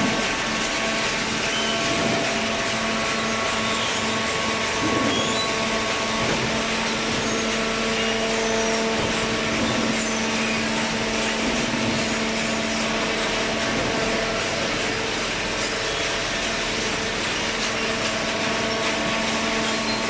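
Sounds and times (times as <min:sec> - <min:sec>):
hydraulic baler motor humming: 0:00.0 - 0:20.0.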